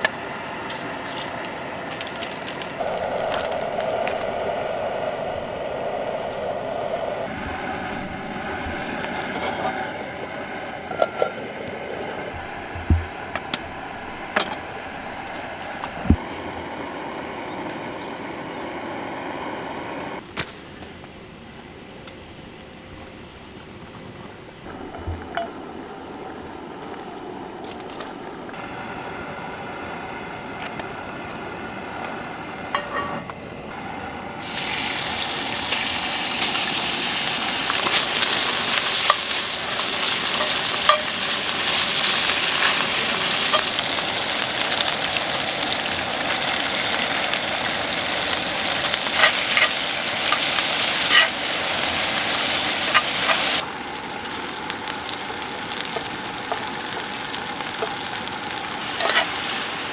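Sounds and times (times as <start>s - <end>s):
utensil stirring against pan: 34.4s - 53.6s, 58.8s - 59.8s
food sizzling in a pan: 34.4s - 59.9s.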